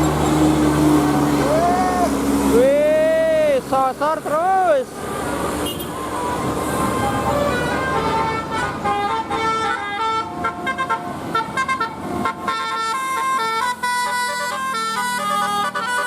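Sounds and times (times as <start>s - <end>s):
multi-tone bus horn tune: 5.1s - 16.0s.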